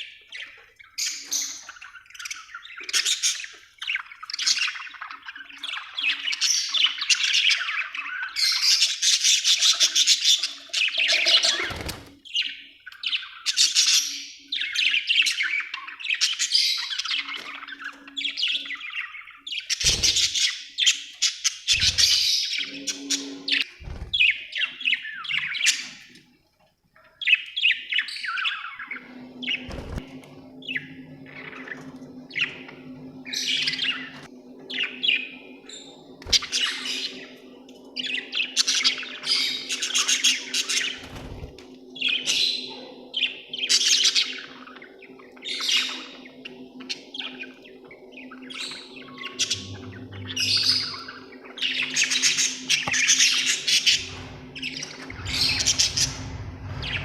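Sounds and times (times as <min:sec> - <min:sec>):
low hum: 0:44.4 - 0:57.0.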